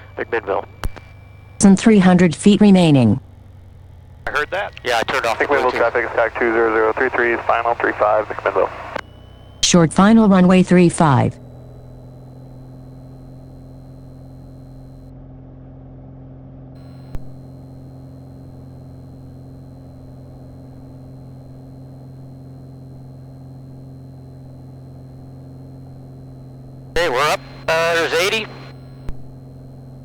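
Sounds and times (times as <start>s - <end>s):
propeller engine drone: 0.0s - 15.5s, 16.8s - 30.0s.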